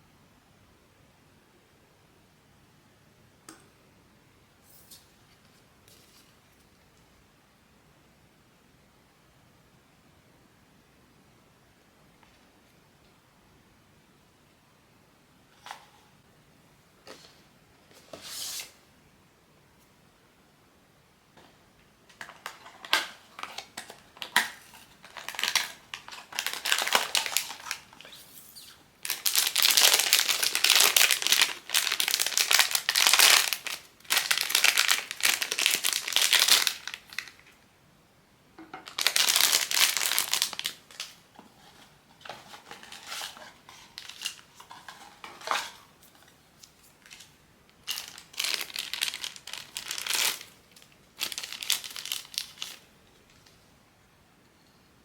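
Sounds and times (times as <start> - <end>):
plastic wrapping crinkling: 22.2 - 37.5, 38.8 - 53.5.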